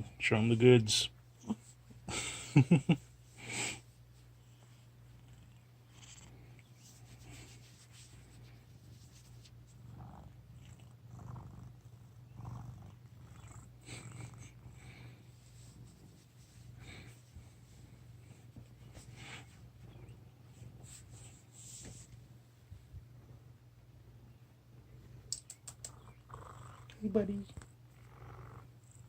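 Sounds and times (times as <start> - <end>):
cat purring: 4.2 - 21.4, 23.2 - 29.0.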